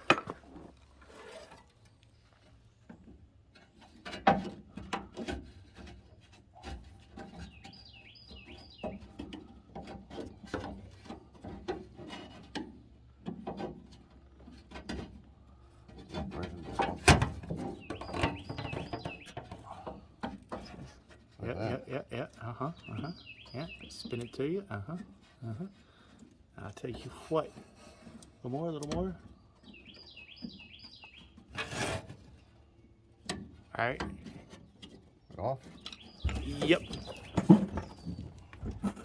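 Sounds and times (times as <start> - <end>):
hand tools clicking and clanking: 33.2 - 39.0.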